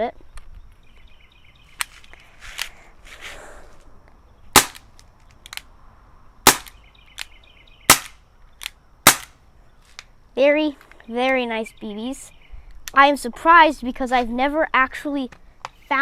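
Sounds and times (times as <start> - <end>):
air pistol shots: 4.6 - 4.9, 6.4 - 6.8, 7.9 - 8.2, 9.0 - 9.4.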